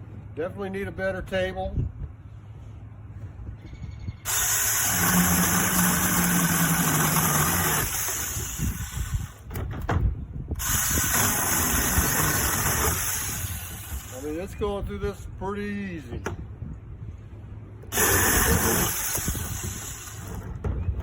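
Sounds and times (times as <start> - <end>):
mini chainsaw cutting wood: 4.3 - 9.5, 10.6 - 14.2, 17.9 - 20.5.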